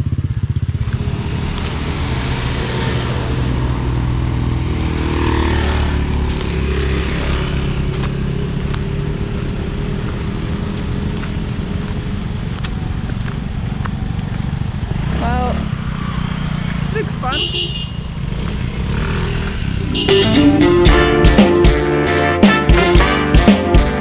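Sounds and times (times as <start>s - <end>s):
vehicle engines running: 0.0s - 17.3s
vehicle passing: 0.2s - 7.9s.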